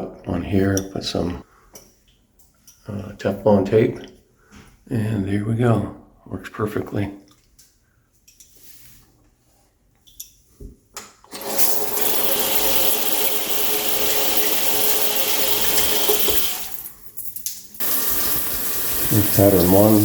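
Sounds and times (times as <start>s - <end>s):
shower head spraying water: 11.3s - 20.0s.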